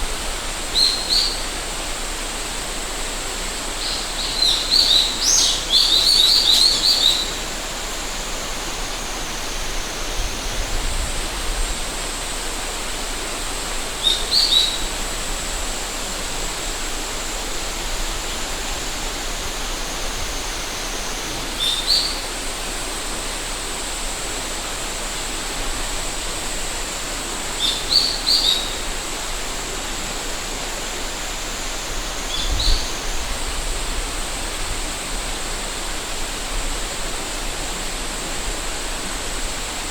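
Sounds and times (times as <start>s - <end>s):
cicada buzzing: 0.0s - 39.9s
river flowing: 0.0s - 39.9s
small bird chirping: 0.8s - 1.4s, 3.8s - 7.4s, 14.0s - 14.9s, 21.6s - 22.2s, 27.6s - 28.8s
wind rumble on microphone: 9.6s - 12.0s, 31.9s - 35.6s.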